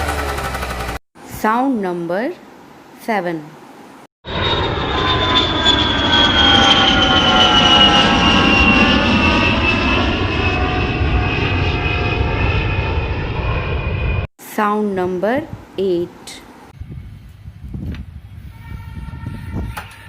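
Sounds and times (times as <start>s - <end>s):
airplane flying past: 4.3s - 14.3s.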